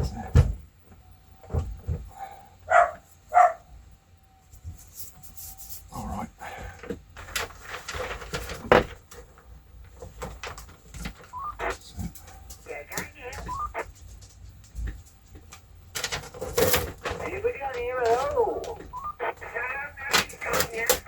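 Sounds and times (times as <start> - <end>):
dog barking: 2.1 - 3.7
rustling and handling noises: 6.5 - 21.0.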